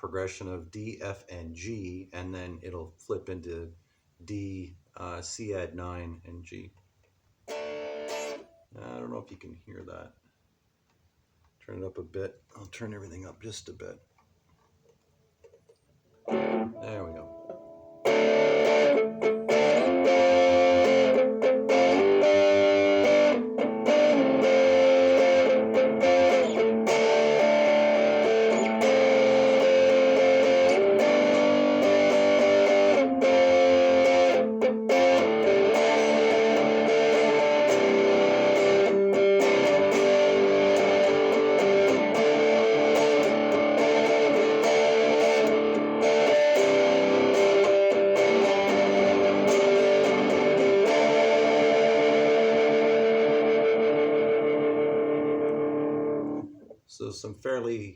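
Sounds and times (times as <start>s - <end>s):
distorted electric guitar chords: 7.5s - 8.5s, 16.2s - 56.5s.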